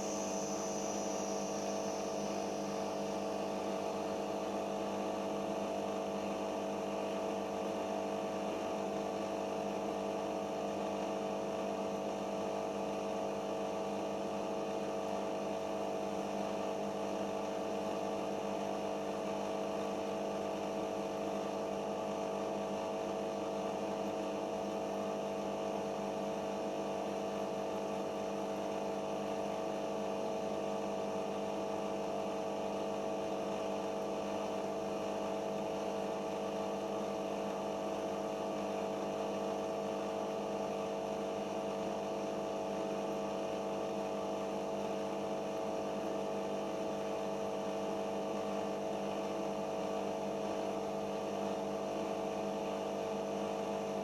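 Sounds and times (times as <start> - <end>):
washing machine spinning: 0.0 - 6.9, 30.5 - 54.0.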